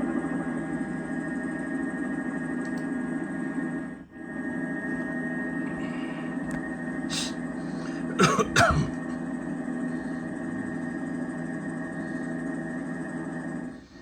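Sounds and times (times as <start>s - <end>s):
electrical hum: 0.0s - 14.0s
person coughing: 8.0s - 9.1s.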